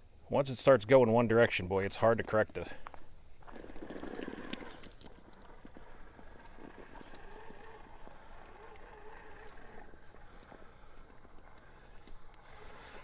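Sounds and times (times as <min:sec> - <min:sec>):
electric motor whine: 0:03.4 - 0:13.0.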